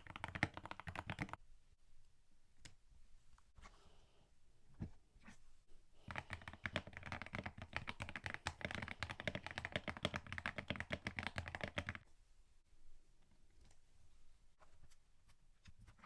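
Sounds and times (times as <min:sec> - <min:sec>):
mechanical keyboard typing: 0:00.0 - 0:01.4, 0:06.1 - 0:12.0.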